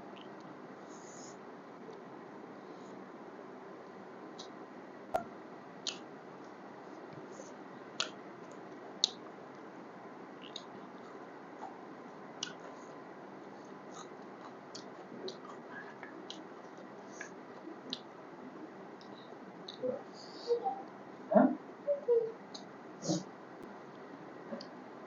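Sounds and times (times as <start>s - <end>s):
steady low hiss: 0.0s - 25.0s
wet chewing mouth clicks: 10.4s - 11.8s, 12.4s - 13.0s, 13.7s - 18.1s.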